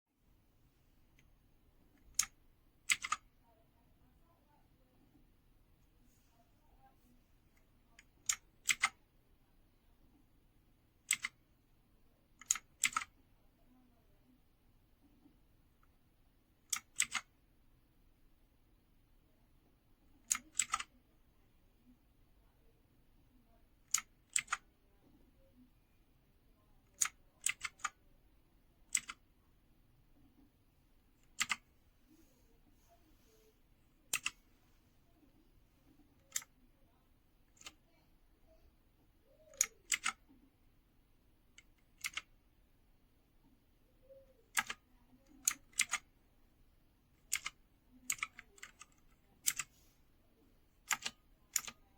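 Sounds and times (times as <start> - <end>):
mechanical keyboard keys clicking: 2.0 - 3.2, 11.1 - 11.4, 12.4 - 13.1, 16.7 - 17.3, 20.2 - 20.9, 23.9 - 24.6, 26.9 - 28.0, 28.9 - 29.2, 31.2 - 31.6, 36.2 - 36.5, 39.4 - 40.3, 41.6 - 42.3, 44.5 - 46.0, 47.3 - 49.7, 50.8 - 51.8.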